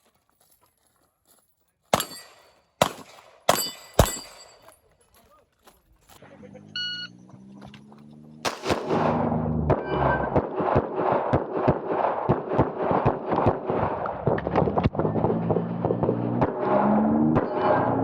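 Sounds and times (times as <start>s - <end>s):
pistol firing rapid shots: 1.9s - 4.6s, 8.5s - 9.2s, 10.4s - 14.3s.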